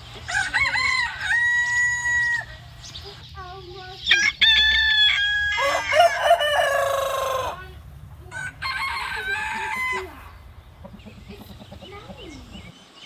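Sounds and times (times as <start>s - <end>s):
rooster crowing: 0.2s - 2.8s, 4.1s - 10.6s.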